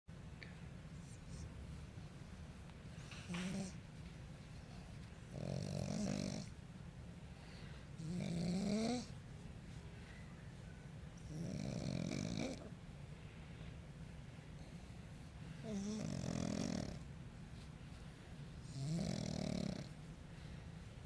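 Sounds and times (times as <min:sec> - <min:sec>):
dog snoring: 0:03.2 - 0:03.8, 0:05.3 - 0:06.6, 0:08.0 - 0:09.1, 0:11.2 - 0:12.7, 0:15.6 - 0:17.1, 0:18.6 - 0:20.0
dog snorting: 0:03.2 - 0:03.8, 0:05.3 - 0:06.6, 0:08.0 - 0:09.1, 0:11.2 - 0:12.7, 0:15.6 - 0:17.1, 0:18.7 - 0:20.0.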